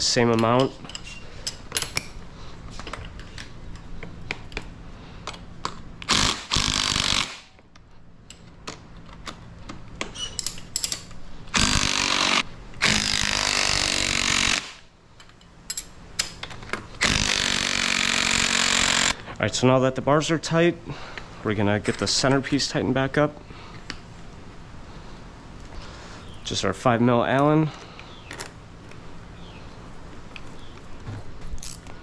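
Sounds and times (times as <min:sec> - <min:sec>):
tool handling clicks: 0:07.6 - 0:12.9.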